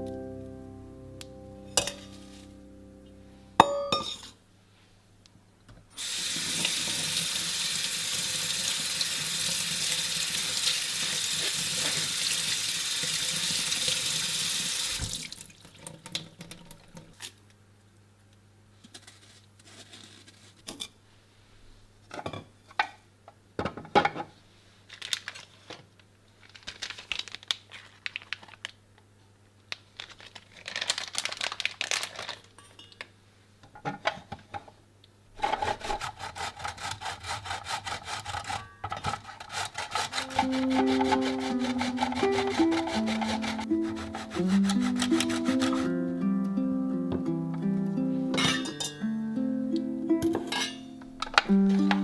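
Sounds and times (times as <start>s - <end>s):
kitchen tap running: 6.0s - 17.1s, 39.8s - 45.9s
kitchenware clinking and knocking: 48.4s - 49.0s, 50.3s - 51.5s.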